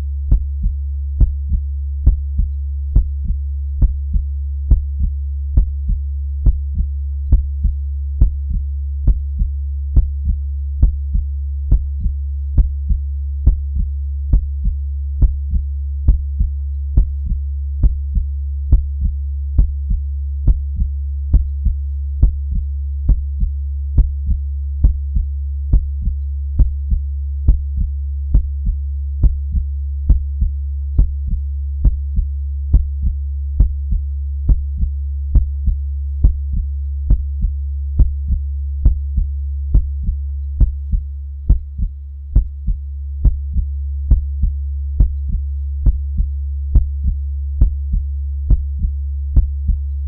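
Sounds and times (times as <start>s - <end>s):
heartbeat thumps: 0.0s - 50.0s
steady low hum: 0.0s - 50.0s.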